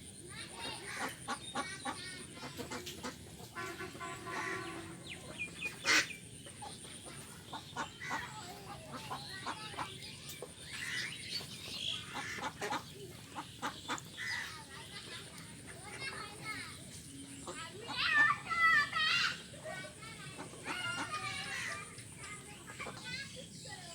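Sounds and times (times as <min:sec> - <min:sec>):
poultry calling: 0:00.8 - 0:10.0, 0:10.7 - 0:15.0
long harsh poultry call: 0:03.6 - 0:05.3.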